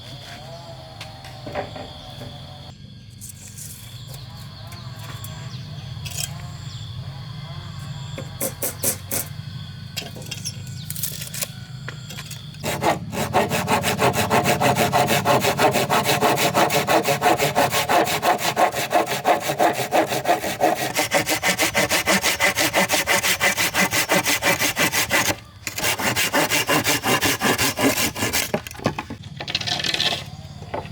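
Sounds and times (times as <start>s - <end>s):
saw cutting through wood: 12.6s - 28.8s.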